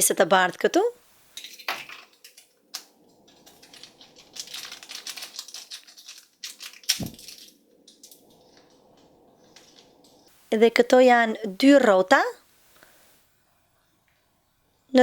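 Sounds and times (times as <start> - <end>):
plastic bag crinkling: 1.8 - 10.3.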